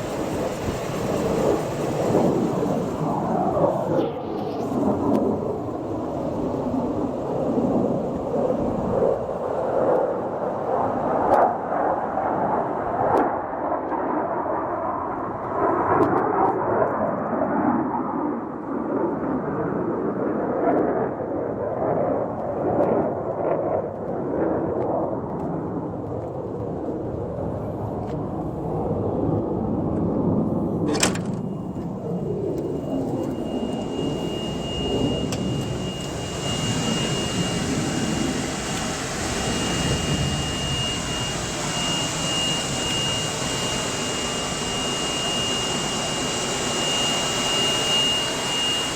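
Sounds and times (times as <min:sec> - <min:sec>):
steady high-pitched tone: 0:30.8 - 0:48.9.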